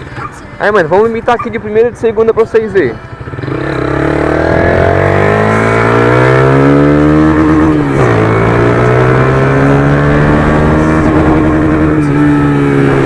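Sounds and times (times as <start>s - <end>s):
motorcycle engine accelerating: 3.1s - 13.0s.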